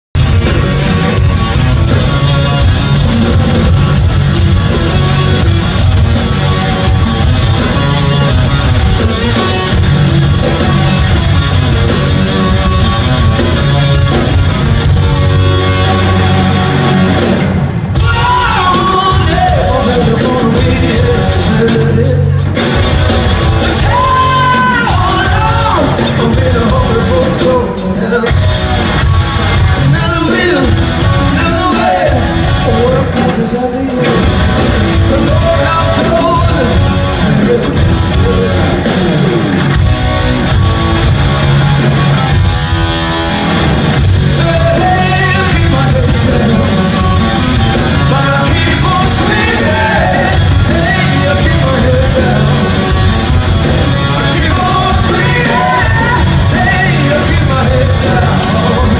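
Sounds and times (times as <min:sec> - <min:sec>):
live rock band playing: 0:00.2 - 0:58.9
singer singing and yelling: 0:00.2 - 0:58.9.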